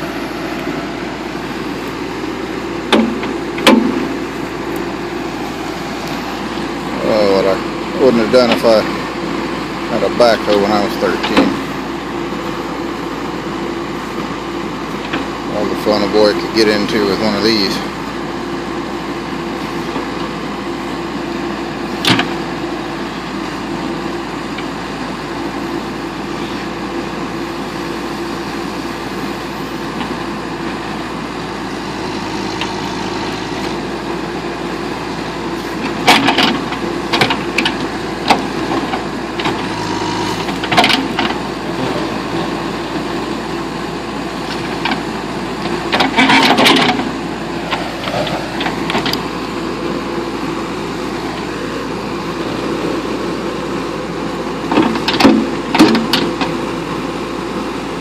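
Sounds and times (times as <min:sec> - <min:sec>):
backhoe engine running: 0:00.0 - 0:58.0.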